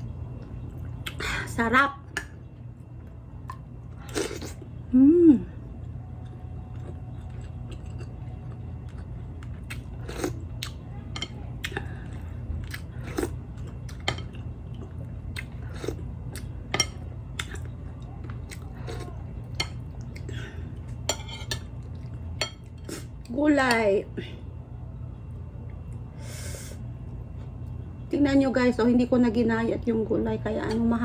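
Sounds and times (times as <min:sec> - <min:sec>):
low steady hum: 0:00.0 - 0:31.0
chewing and biting food: 0:06.2 - 0:10.8.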